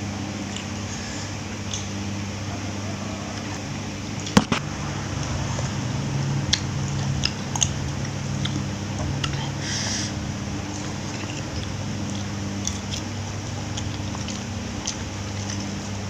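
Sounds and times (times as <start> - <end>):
steady low hum: 0.0 - 16.0
soft chewing: 5.2 - 16.0.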